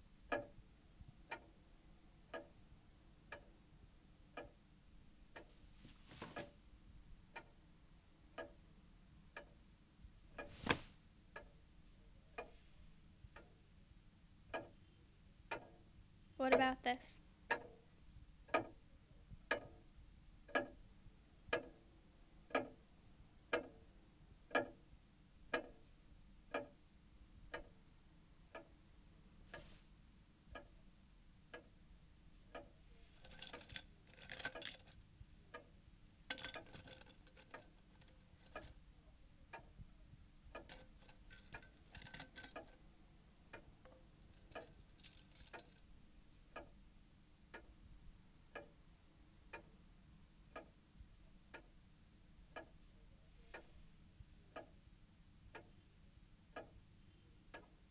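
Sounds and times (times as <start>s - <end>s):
clock ticking: 0.3s - 0.6s, 1.2s - 1.6s, 2.3s - 2.6s, 3.3s - 3.6s, 4.3s - 4.6s, 7.3s - 7.6s, 8.3s - 8.6s, 9.3s - 9.6s, 11.3s - 11.6s, 14.4s - 14.8s, 15.5s - 15.8s, 16.4s - 17.8s, 18.5s - 18.8s, 19.4s - 19.8s, 20.4s - 20.8s, 21.5s - 21.8s, 22.4s - 22.8s, 23.5s - 23.8s, 24.5s - 24.8s, 25.5s - 25.9s, 26.5s - 26.8s, 27.5s - 27.8s, 28.5s - 28.8s, 30.5s - 30.8s, 32.4s - 38.8s, 39.5s - 42.8s, 43.5s - 45.8s, 46.5s - 46.8s, 48.5s - 48.8s, 56.5s - 56.8s, 57.5s - 57.9s.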